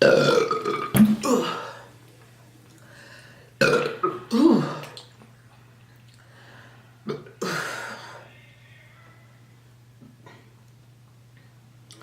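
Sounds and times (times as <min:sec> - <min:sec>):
person burping: 0:00.0 - 0:01.8, 0:03.6 - 0:05.0.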